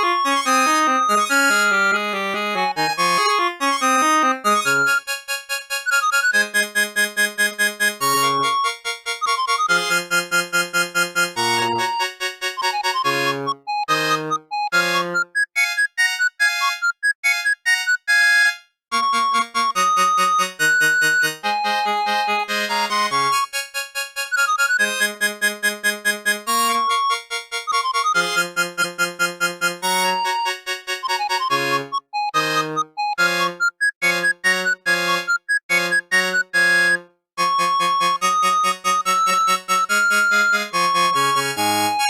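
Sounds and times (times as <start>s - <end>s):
synthesized ringtone melody: 0.0s - 5.0s, 5.9s - 10.2s, 11.4s - 23.5s, 29.9s - 42.0s
synthesizer ringtone melody: 30.1s - 42.0s.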